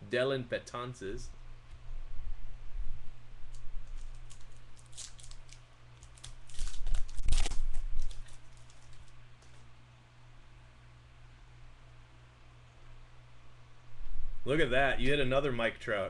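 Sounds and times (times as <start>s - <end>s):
steady low hum: 0.0s - 16.0s
cards and wrappers rustling: 3.5s - 9.7s.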